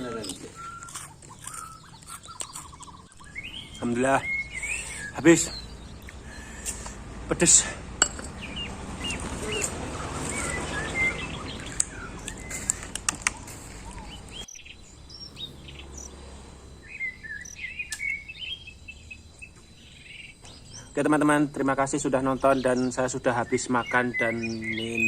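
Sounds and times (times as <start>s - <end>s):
small birds chirping: 0.0s - 25.0s
sharp clicks: 6.0s - 7.0s, 11.6s - 14.4s, 17.9s - 18.2s.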